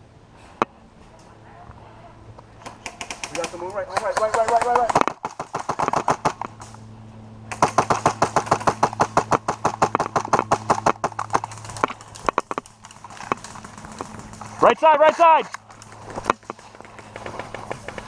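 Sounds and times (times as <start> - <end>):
steady hum: 4.9 - 18.0.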